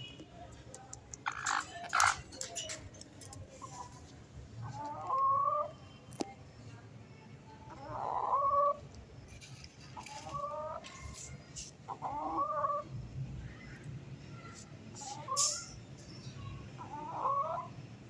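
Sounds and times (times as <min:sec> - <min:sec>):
chicken clucking: 0:01.1 - 0:05.7, 0:07.7 - 0:12.9, 0:14.9 - 0:15.6, 0:16.8 - 0:17.8.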